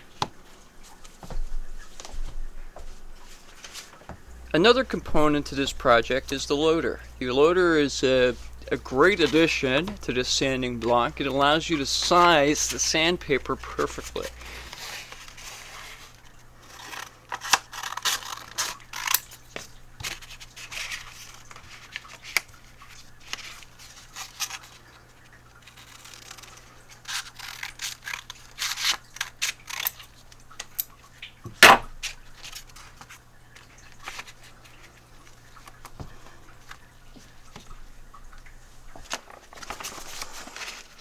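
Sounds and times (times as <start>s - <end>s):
sandpaper and plastic parts rustling: 3.5s - 31.0s, 31.6s - 37.6s, 38.9s - 41.0s
sharp knock: 31.6s - 31.9s.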